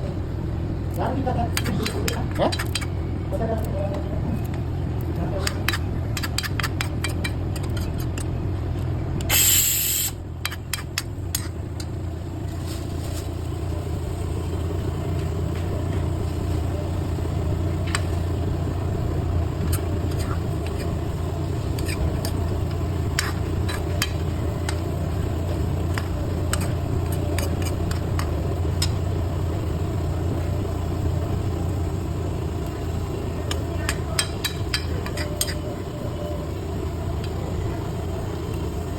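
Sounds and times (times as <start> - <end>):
food frying with pops: 4.5 - 12.1, 13.6 - 35.8
loud hissing burst: 9.3 - 10.2.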